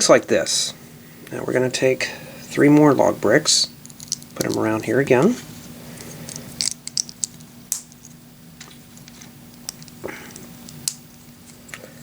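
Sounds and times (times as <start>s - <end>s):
faint steady hum: 0.0s - 12.0s
plastic bricks clicking: 6.3s - 11.0s.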